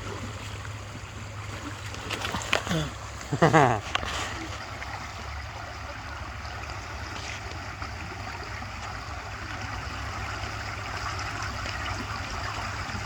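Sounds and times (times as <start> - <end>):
creek water running: 0.0 - 13.0.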